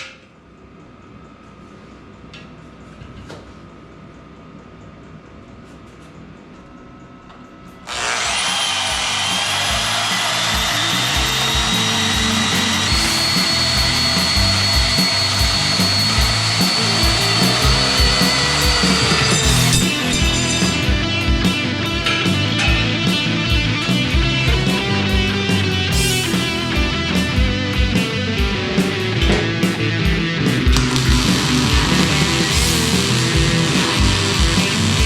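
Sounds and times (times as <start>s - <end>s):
power tool motor whining: 7.9s - 21.0s, 30.8s - 35.0s.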